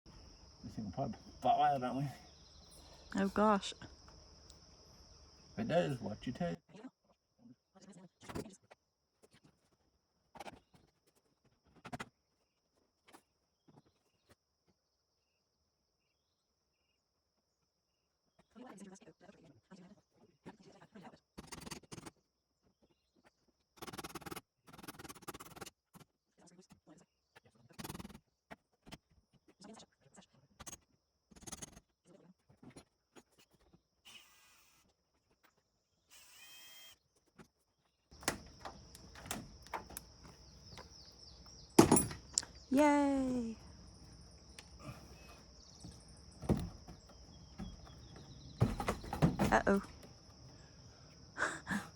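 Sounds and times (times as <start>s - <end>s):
high insect drone: 0.1s - 6.6s, 38.2s - 51.9s
small clicks and knocks: 38.2s - 41.1s
faint knocks and scrapes: 43.9s - 50.6s.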